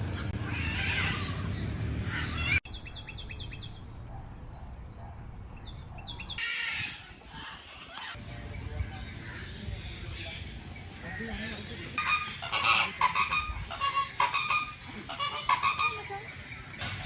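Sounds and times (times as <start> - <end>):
bird chirping: 0.0 - 4.0
bird chattering calls: 7.3 - 17.0.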